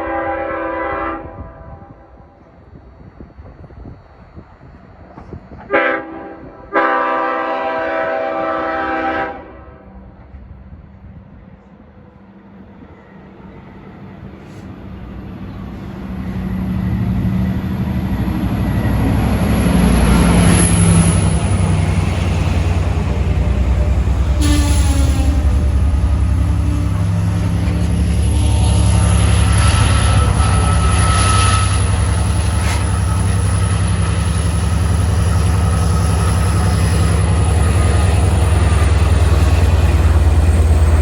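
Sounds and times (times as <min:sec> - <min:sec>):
train horn blasts: 0:00.0 - 0:02.4, 0:05.6 - 0:10.0, 0:19.9 - 0:40.3
diesel locomotive engine: 0:00.0 - 0:41.0
train wheels on rails: 0:02.4 - 0:06.8, 0:10.1 - 0:41.0.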